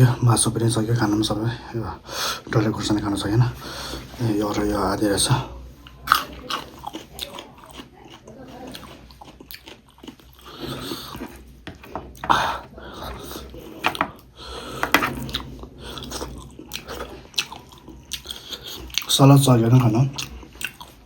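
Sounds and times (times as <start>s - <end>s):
mouth chewing and crunching: 5.8s - 21.0s.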